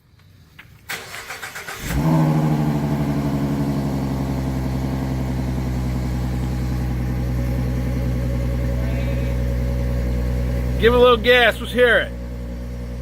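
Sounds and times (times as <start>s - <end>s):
car engine idling: 0.0s - 13.0s
car starter cranking: 0.7s - 2.6s.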